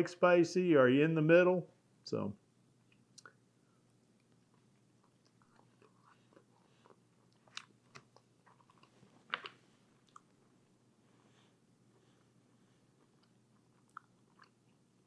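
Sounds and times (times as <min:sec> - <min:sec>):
chewing crispy chicken: 0:04.0 - 0:10.4, 0:12.9 - 0:15.0.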